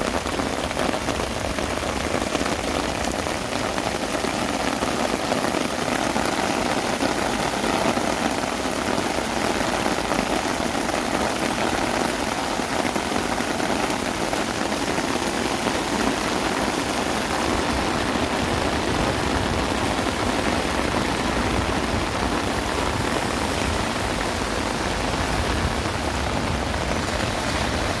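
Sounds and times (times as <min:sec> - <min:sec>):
heavy rain: 0:00.0 - 0:28.0.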